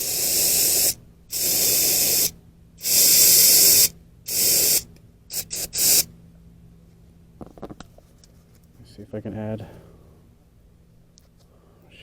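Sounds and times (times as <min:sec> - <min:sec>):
aerosol can spraying: 0:00.0 - 0:06.1.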